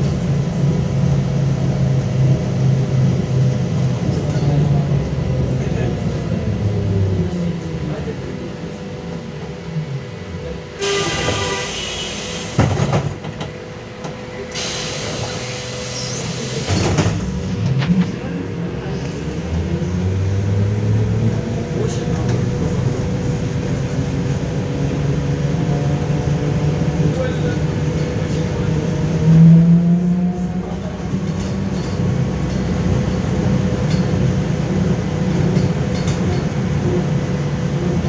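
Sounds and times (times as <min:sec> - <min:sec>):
trolleybus motor whine: 0:00.0 - 0:38.0
compressed-air hiss: 0:14.6 - 0:16.7.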